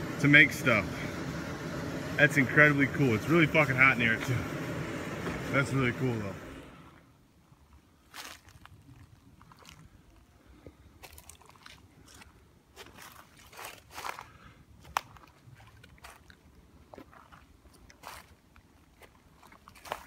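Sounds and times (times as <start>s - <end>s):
faint crunching and scraping: 6.9s - 20.0s.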